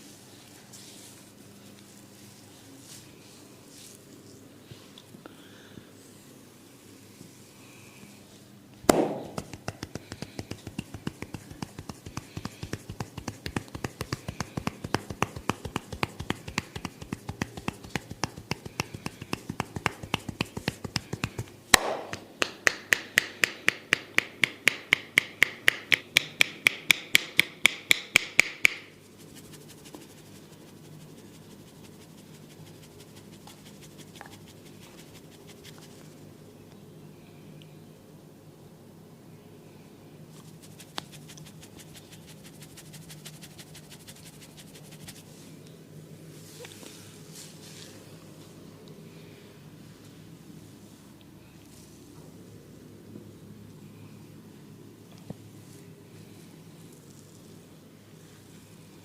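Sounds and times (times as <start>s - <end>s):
hands tapping on head: 8.9s - 28.9s
sharp slaps: 8.9s - 28.9s.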